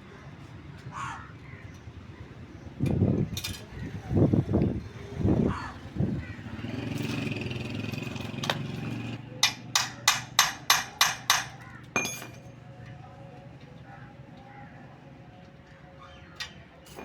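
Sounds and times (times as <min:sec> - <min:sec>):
ringing metal clink: 0:11.9 - 0:12.7.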